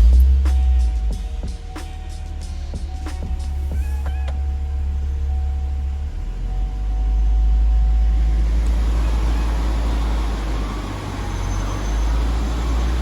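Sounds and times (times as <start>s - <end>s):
engine low rumble: 0.0s - 13.0s.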